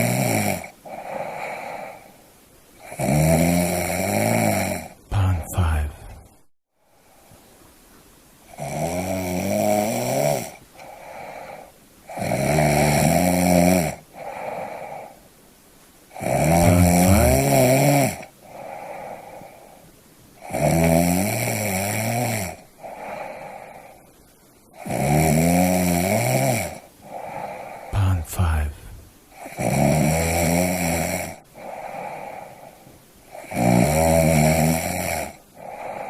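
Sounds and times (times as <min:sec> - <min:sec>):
person snoring: 0:00.0 - 0:02.1, 0:02.8 - 0:06.3, 0:08.5 - 0:15.2, 0:16.1 - 0:19.8, 0:20.4 - 0:24.0, 0:24.8 - 0:36.0.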